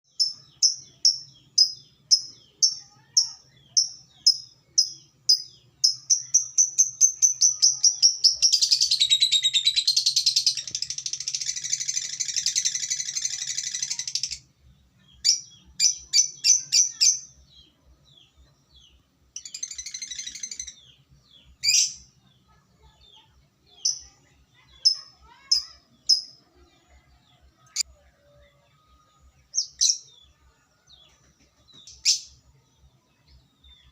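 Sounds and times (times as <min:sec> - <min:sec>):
lovebird chirping and chattering: 0:00.1 - 0:14.5, 0:15.1 - 0:17.7, 0:18.3 - 0:26.7, 0:31.8 - 0:32.4.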